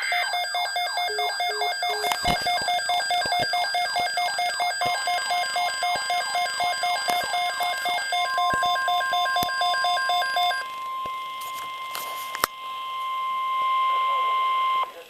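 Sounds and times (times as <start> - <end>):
rapid pulsing electronic beep: 0.0 - 11.9
steady warning alarm tone: 0.0 - 15.0.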